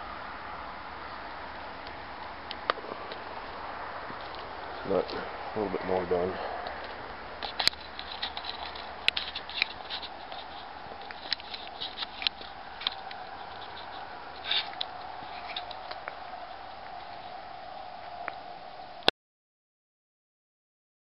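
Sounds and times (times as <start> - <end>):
steady hum: 0.0 - 19.1
short rustles: 2.8 - 17.4.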